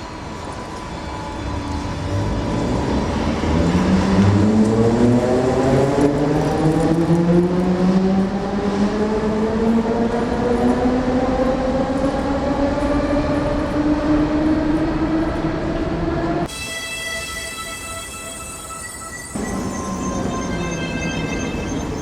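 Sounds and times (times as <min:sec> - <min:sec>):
wheels rumbling on rails: 0:00.0 - 0:16.5.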